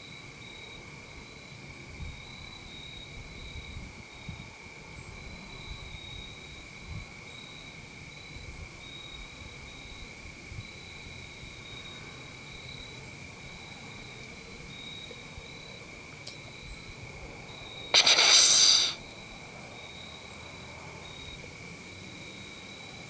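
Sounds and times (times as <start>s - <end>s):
crickets and insects trilling: 0.0s - 23.0s
deer snort-wheeze: 17.9s - 19.0s.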